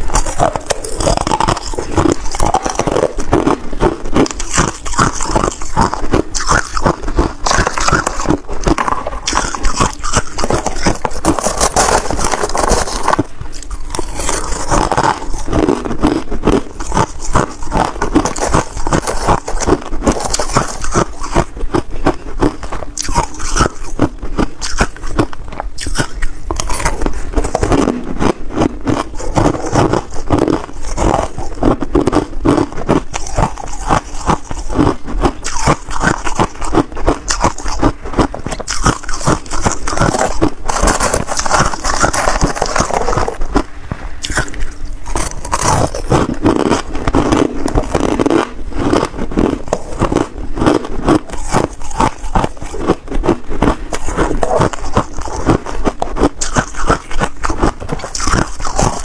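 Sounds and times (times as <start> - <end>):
ice being chewed and crunched: 0.0 - 59.0.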